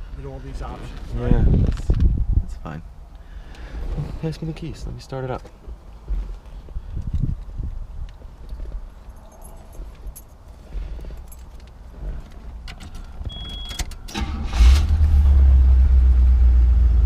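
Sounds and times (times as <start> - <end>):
keys jingling: 8.9 - 11.8
car engine cranking and idling: 11.3 - 17.0.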